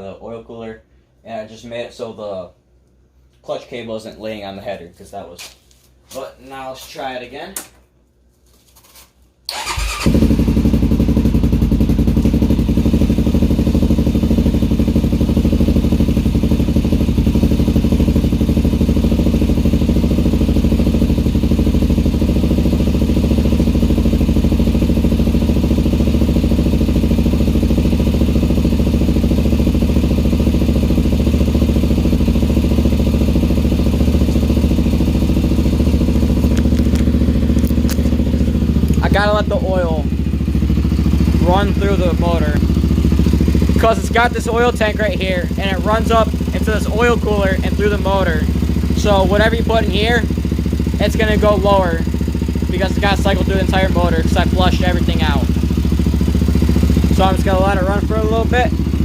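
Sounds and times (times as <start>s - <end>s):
single-cylinder engine idling: 9.5s - 59.0s.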